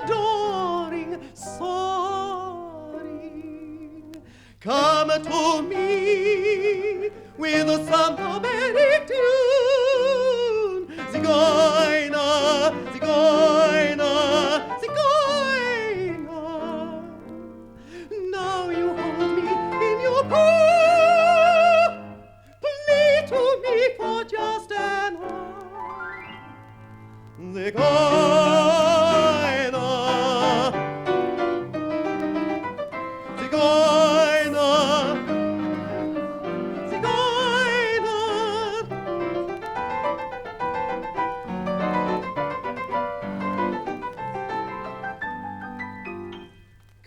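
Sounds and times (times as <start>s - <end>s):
operatic soprano singing: 0.0s - 17.3s, 18.0s - 26.0s, 27.4s - 30.9s, 33.2s - 39.1s
piano accompaniment: 0.0s - 47.0s.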